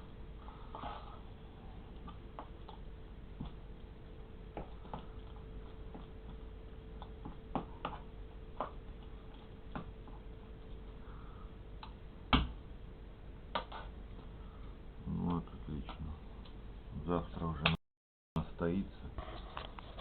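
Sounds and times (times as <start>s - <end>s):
faint steady hum: 0.0s - 17.8s.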